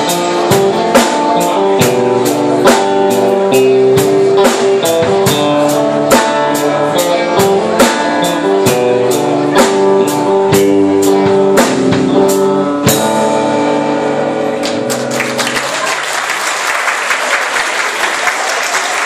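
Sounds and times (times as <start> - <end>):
rock band playing: 0.0 - 18.2
audience applauding: 14.6 - 19.0.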